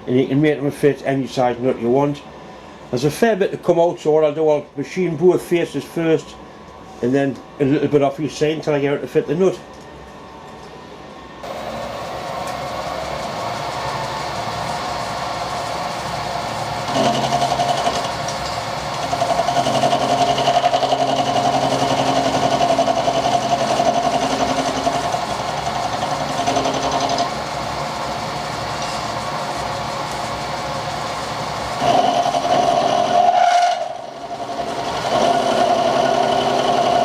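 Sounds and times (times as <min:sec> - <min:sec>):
milling machine cutting steel: 0:11.4 - 0:27.5, 0:31.7 - 0:37.0.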